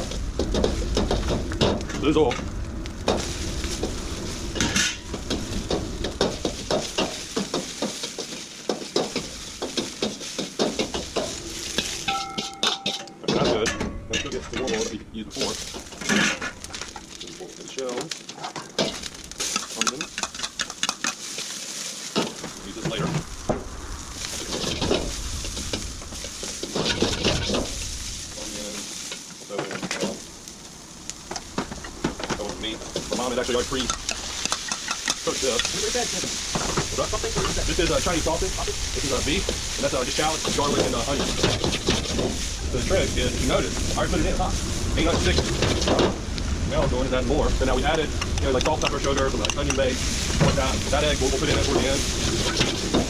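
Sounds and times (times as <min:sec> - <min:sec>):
low rumble: 0:00.0 - 0:07.3, 0:22.5 - 0:28.9
hot oil sizzling: 0:00.0 - 0:53.0
metal spatula scraping in a wok: 0:04.3 - 0:15.0.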